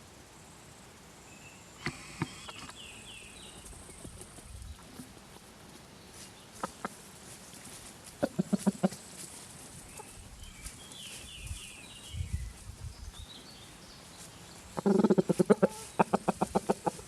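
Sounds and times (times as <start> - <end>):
chicken clucking: 6.5 - 7.0, 8.1 - 9.3, 9.9 - 10.2, 14.7 - 17.0
faint high chirping: 9.8 - 16.0.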